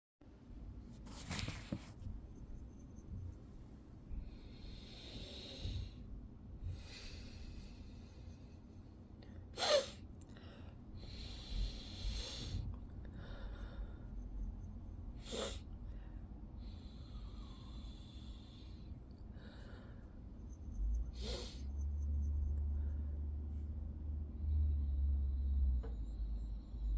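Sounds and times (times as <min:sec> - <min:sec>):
person sniffing and hitching breaths: 0:06.6 - 0:08.9, 0:09.5 - 0:23.2.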